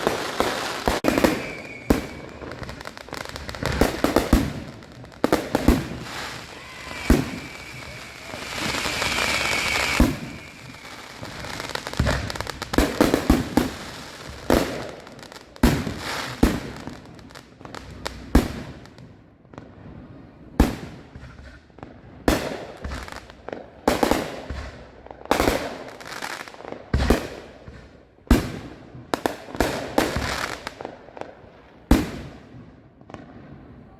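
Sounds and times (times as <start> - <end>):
firework whistling: 0.0 - 14.9
fireworks banging and crackling: 0.0 - 33.9.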